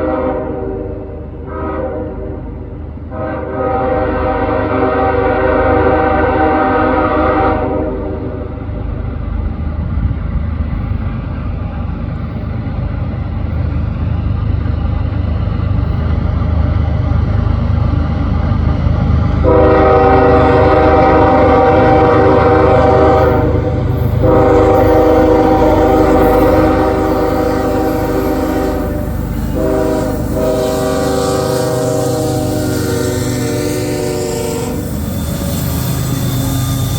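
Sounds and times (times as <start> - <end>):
locomotive air horn: 0.0 - 8.5, 19.4 - 36.9
diesel locomotive rumble: 0.0 - 36.9.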